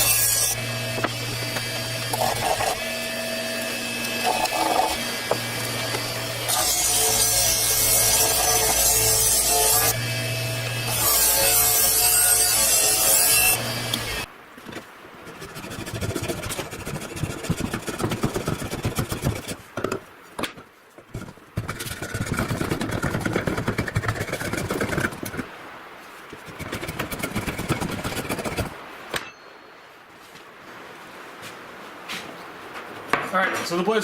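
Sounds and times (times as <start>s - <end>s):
draw knife scraping wood: 14.6s - 20.0s, 21.1s - 25.4s, 26.5s - 28.7s.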